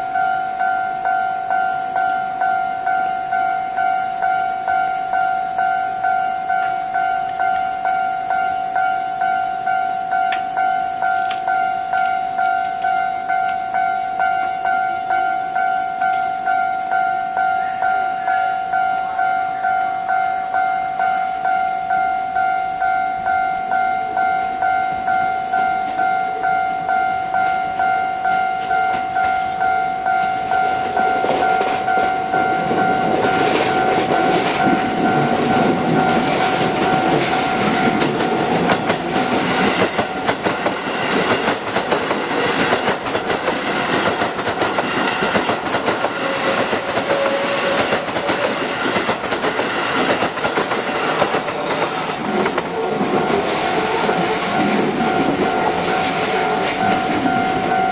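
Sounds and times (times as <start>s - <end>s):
level crossing bell ringing: 0.0s - 38.6s, 51.5s - 57.9s
electric train passing: 0.0s - 57.9s
wheels clattering over rail joints: 28.4s - 57.9s.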